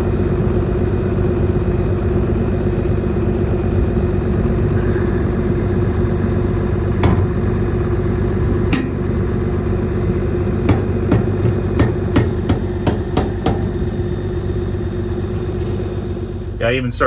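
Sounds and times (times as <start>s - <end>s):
combine engine idling: 0.0s - 17.0s
sharp knocks: 7.0s - 7.9s, 8.7s - 9.5s, 10.6s - 14.4s.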